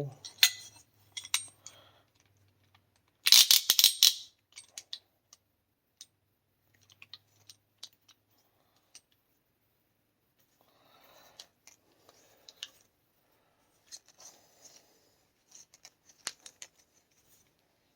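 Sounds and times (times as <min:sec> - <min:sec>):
metal tools clattering: 0:00.0 - 0:01.8, 0:03.3 - 0:04.9.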